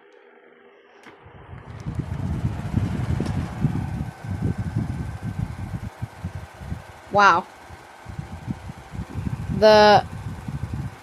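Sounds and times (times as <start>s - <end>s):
fan switch click: 1.0s - 6.8s
box fan rushing air: 1.0s - 11.0s
wind buffeting microphone: 1.2s - 11.0s.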